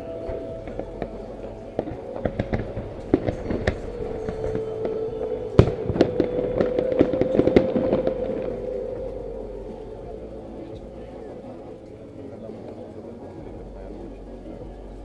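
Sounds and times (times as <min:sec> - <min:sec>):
steady held tone: 0:00.0 - 0:15.0
fireworks bangs and crackles: 0:00.2 - 0:08.6.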